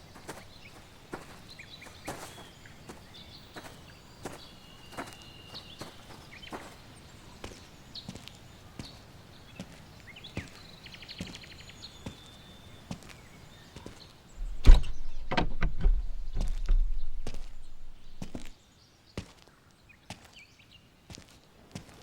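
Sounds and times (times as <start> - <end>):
deep wooden rumble: 14.4 - 18.5
sharp knocks: 14.4 - 18.5
slow knocks like footsteps: 14.4 - 18.5.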